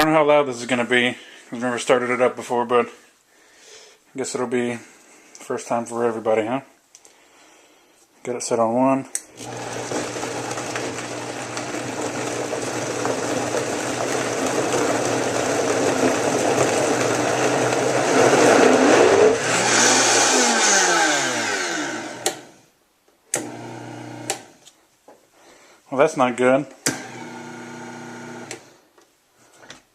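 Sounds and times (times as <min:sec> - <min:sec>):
blender motor running: 0:09.4 - 0:22.6, 0:23.4 - 0:24.5, 0:26.9 - 0:28.7.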